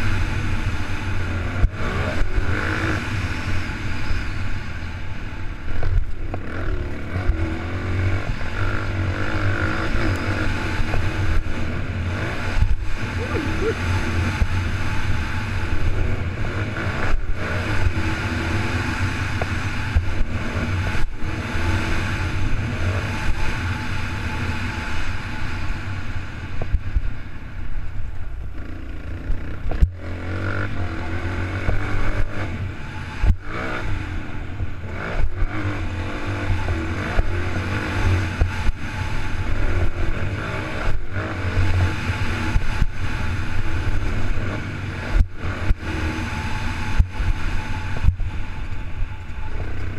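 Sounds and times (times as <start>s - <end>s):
dirt bike engine revving: 0.0s - 25.8s, 28.6s - 49.9s
wind noise on microphone: 29.3s - 49.9s.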